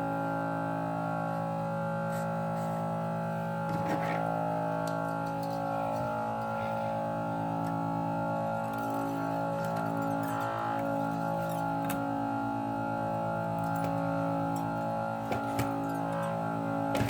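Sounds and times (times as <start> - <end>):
low pulse: 3.0 - 17.0
sustained background music tones: 3.2 - 17.0.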